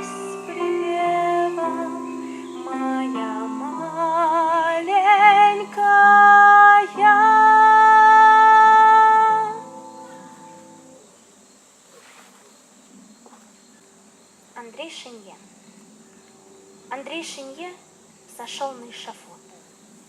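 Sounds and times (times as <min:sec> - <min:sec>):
person singing with vibrato: 0:00.0 - 0:11.0
sustained instrumental accompaniment: 0:00.0 - 0:11.0.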